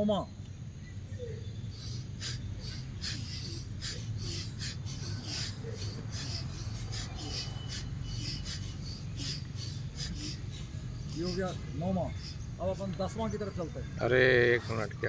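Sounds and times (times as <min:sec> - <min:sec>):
forceful breaths through nose: 0:01.6 - 0:13.4.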